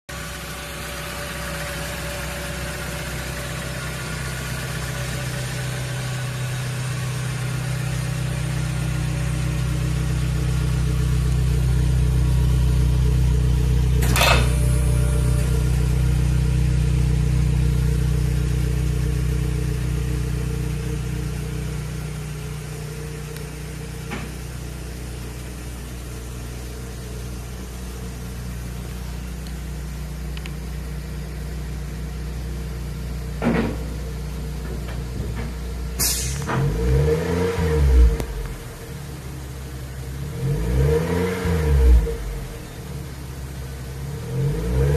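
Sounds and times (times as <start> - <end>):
car engine idling: 0.1 - 40.6, 41.9 - 44.6
engine revving: 36.0 - 38.8, 40.2 - 42.6, 44.0 - 44.9.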